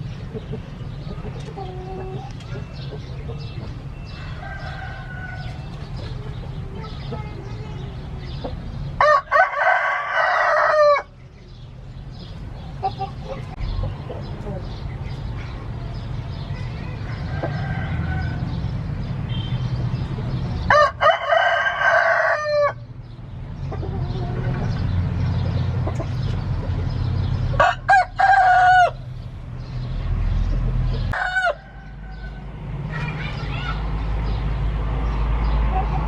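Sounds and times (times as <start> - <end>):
roosters crowing: 0.0 - 6.8, 8.8 - 11.2, 15.5 - 19.0, 20.5 - 23.1, 26.8 - 29.4, 30.4 - 36.0.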